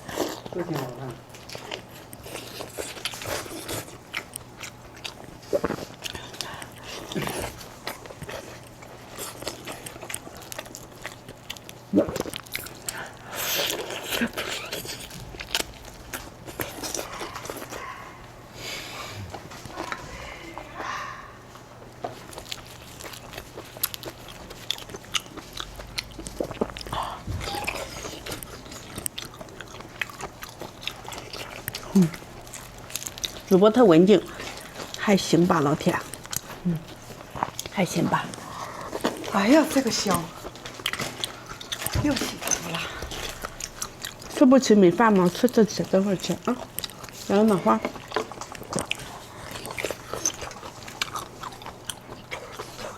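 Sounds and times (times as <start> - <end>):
chewing and crunching food: 0.0 - 52.9.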